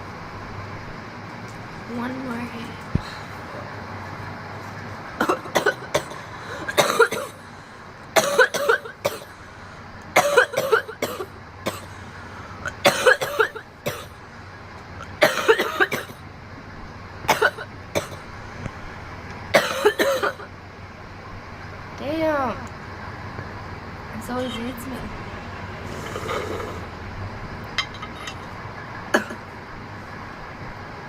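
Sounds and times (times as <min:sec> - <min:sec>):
girl coughing: 0:05.2 - 0:07.4, 0:08.2 - 0:09.3, 0:10.2 - 0:11.9, 0:12.7 - 0:14.1, 0:15.2 - 0:16.2, 0:17.3 - 0:18.2, 0:19.6 - 0:20.5, 0:29.2 - 0:29.4.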